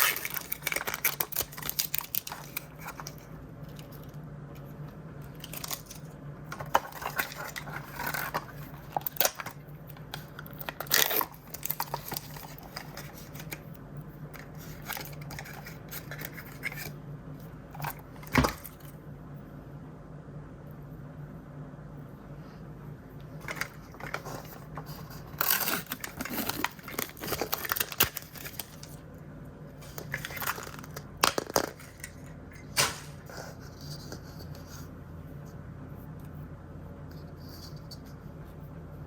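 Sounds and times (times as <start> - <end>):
plastic packaging crinkling: 0.0 - 4.1, 5.4 - 13.6, 23.4 - 29.0, 29.8 - 32.2
low steady hum: 0.0 - 39.0.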